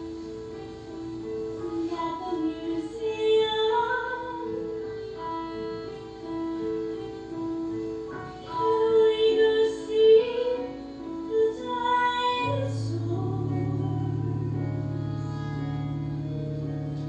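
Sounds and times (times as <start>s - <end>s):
small instrumental accompaniment: 0.0s - 17.0s
woman singing: 1.6s - 6.1s, 8.1s - 14.4s
held chord with low bass: 12.4s - 17.0s.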